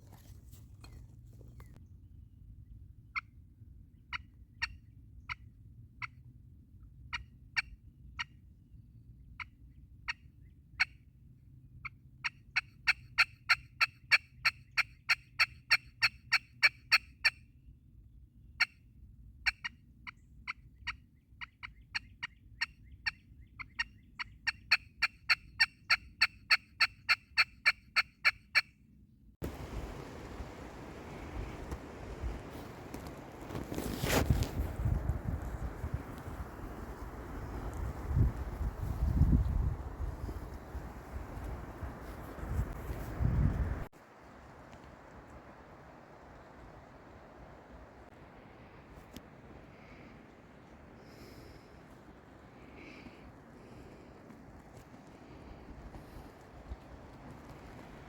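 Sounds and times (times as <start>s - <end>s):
low rumble of wind: 0.0s - 25.0s, 28.9s - 58.0s
turkey yelps and clucks: 19.4s - 28.7s.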